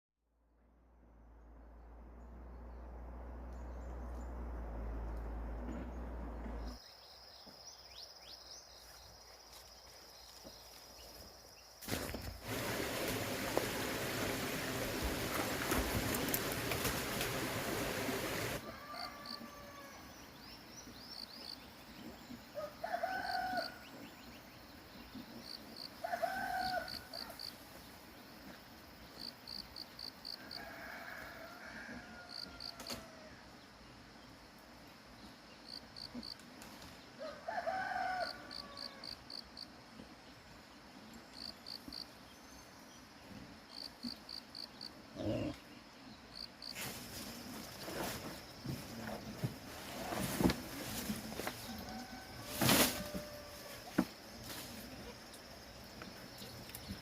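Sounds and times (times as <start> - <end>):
rooster crowing: 18.6 - 20.1, 22.6 - 23.9, 26.0 - 27.5, 30.3 - 33.4, 37.2 - 39.4, 51.6 - 53.9.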